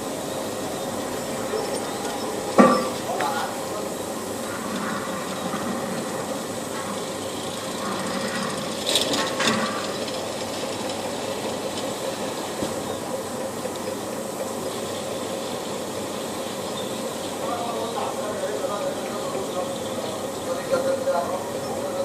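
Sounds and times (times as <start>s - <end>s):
mechanical running hum with hiss: 0.0s - 22.0s.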